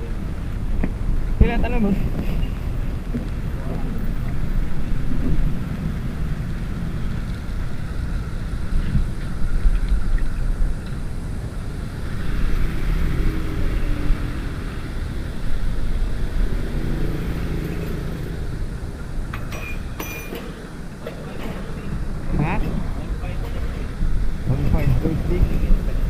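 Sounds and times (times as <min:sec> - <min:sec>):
traffic rumble: 0:00.0 - 0:26.0
sharp metallic clinks: 0:17.3 - 0:18.5, 0:19.3 - 0:24.0.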